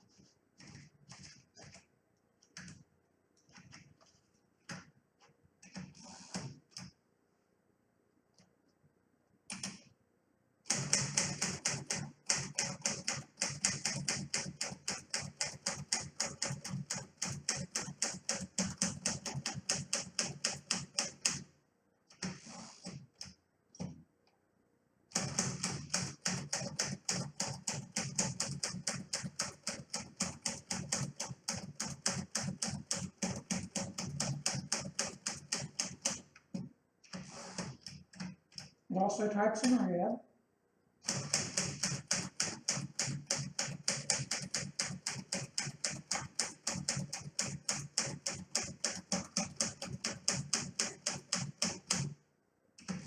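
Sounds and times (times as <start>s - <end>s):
typewriter keystrokes: 10.7s - 21.4s, 25.1s - 36.2s, 41.1s - 52.1s
typewriter rattle and click: 10.7s - 21.5s, 25.1s - 36.3s, 41.0s - 52.2s.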